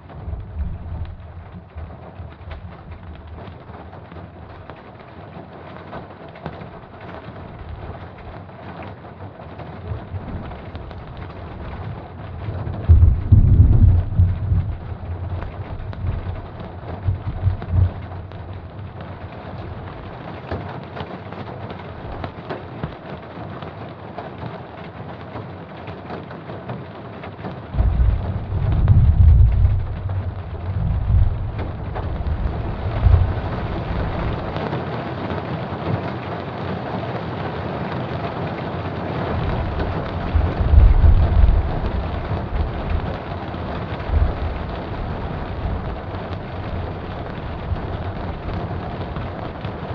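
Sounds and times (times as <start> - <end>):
thunder rumbling: 0.0 - 5.0, 7.3 - 8.4, 9.6 - 20.4, 27.7 - 34.8, 39.1 - 49.9
steady rain: 0.0 - 49.9.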